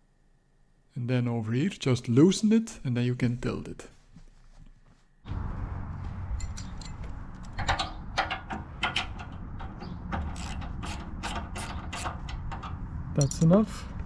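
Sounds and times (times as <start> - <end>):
low steady rumble: 5.2 - 14.0
ratchet wrench clicking: 10.2 - 12.5.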